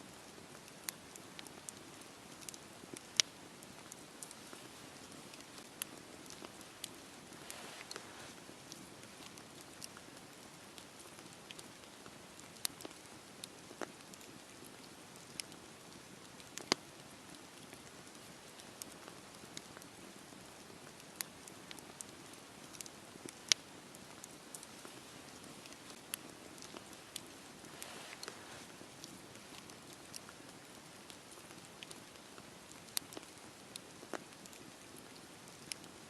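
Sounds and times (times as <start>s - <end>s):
wood crackling and popping: 0.0s - 36.0s
hiss of flames: 1.8s - 10.1s, 24.7s - 31.0s.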